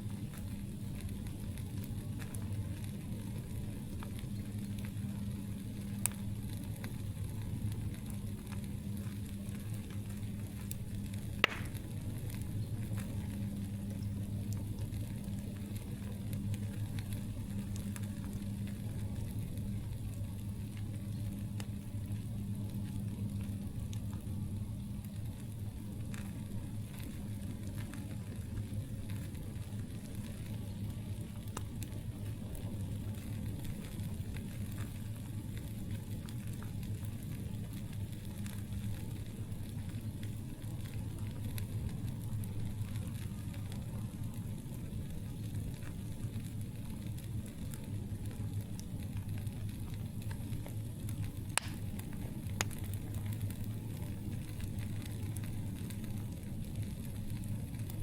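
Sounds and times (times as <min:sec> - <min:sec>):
campfire crackling: 0:00.0 - 0:58.0
fire pops: 0:00.0 - 0:58.0.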